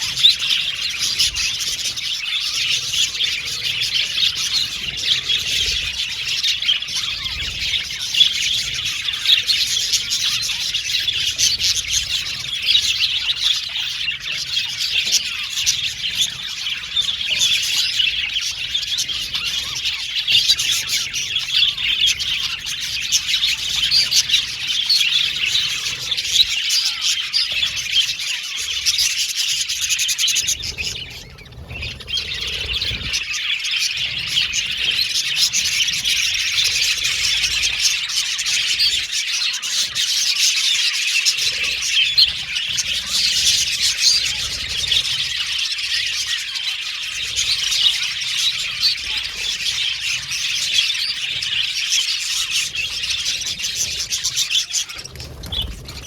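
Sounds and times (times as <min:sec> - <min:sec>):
budgerigars chirping and chattering: 0:00.0 - 0:56.0.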